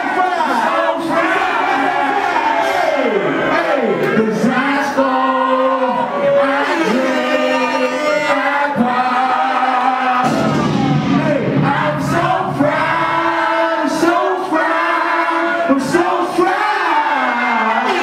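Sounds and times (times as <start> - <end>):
music with voices singing: 5.0 - 18.0.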